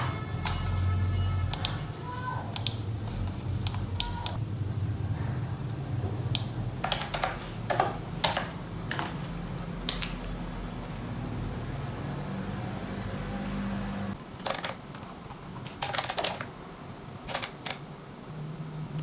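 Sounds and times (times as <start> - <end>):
clicky keyboard keystrokes: 1.5 - 1.8, 2.6 - 4.4.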